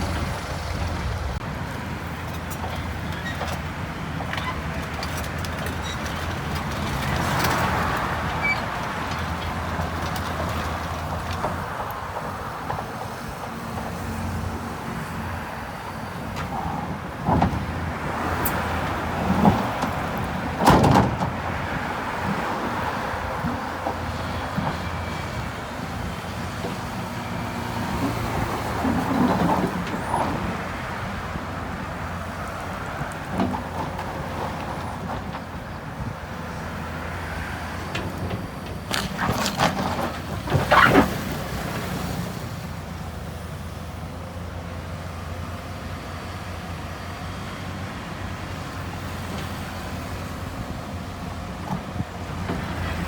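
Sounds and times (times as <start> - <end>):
diesel engine running: 0.0 - 7.2.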